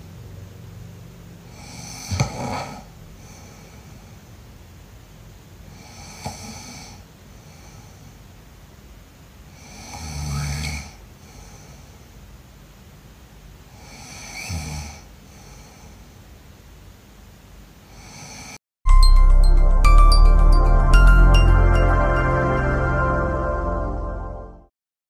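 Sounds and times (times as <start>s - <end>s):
person snoring with deep rattle: 1.5s - 4.1s, 5.7s - 8.0s, 9.5s - 12.0s, 13.7s - 16.0s, 17.9s - 18.6s
loud music: 18.9s - 24.7s.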